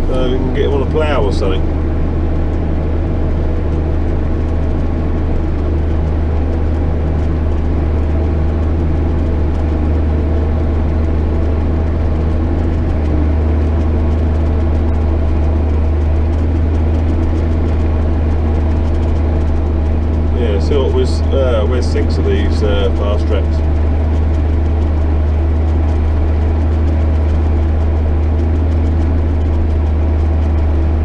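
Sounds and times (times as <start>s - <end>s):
tractor engine droning: 0.0s - 31.0s.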